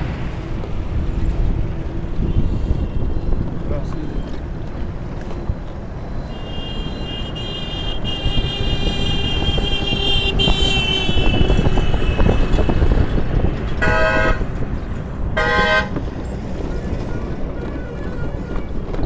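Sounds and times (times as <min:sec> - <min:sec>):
vehicle rumble: 0:00.0 - 0:19.0
vehicle horn toot: 0:06.3 - 0:12.9, 0:13.8 - 0:14.4, 0:15.4 - 0:16.0.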